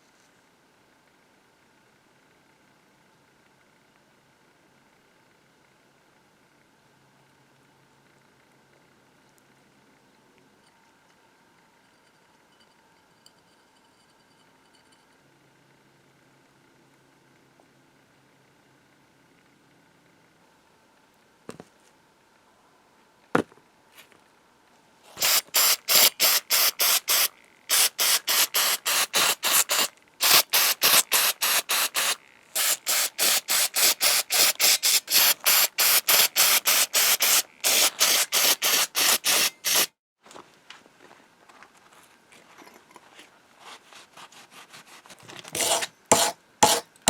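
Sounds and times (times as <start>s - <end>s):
aerosol can spraying: 25.2s - 39.9s, 45.6s - 46.8s.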